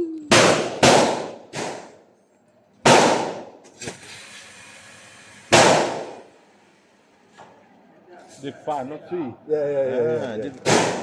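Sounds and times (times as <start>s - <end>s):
pistol shots: 0.3s - 2.0s, 2.8s - 3.5s, 5.5s - 6.2s, 10.7s - 11.0s.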